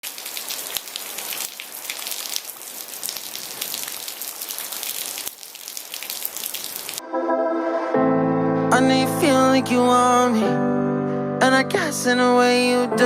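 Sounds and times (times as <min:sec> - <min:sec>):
steady rain falling: 0:00.0 - 0:07.0.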